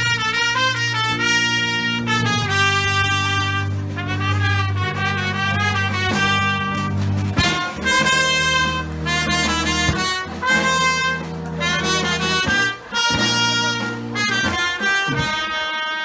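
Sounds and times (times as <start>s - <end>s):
brass ensemble playing fanfare: 0.0s - 16.0s.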